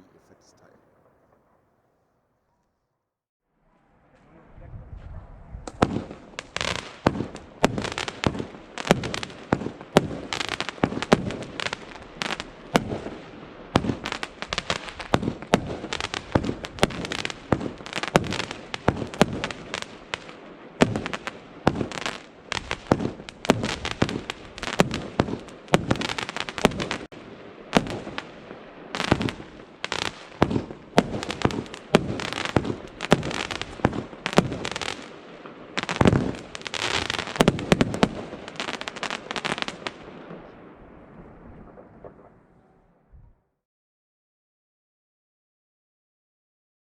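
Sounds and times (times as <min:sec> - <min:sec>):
firework shots and bangs: 0:05.6 - 0:40.6, 0:41.6 - 0:42.4.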